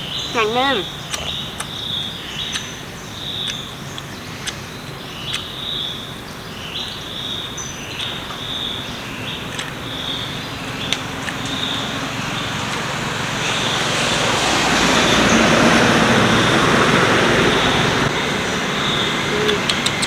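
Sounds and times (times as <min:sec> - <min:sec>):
insects chirping: 0:00.0 - 0:20.0
sharp clicks: 0:02.4 - 0:02.8, 0:19.4 - 0:20.0.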